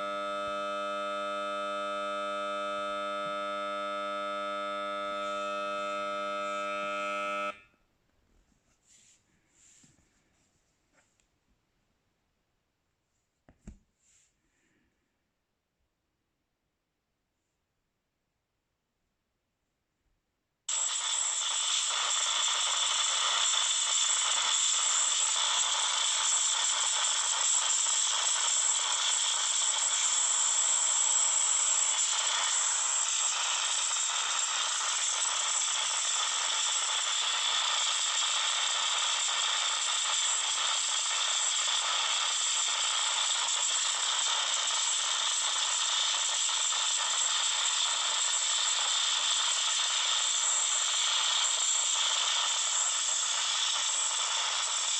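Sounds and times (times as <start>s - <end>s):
high-pitched static hiss from phone speaker: 0.0s - 7.7s, 20.7s - 54.9s.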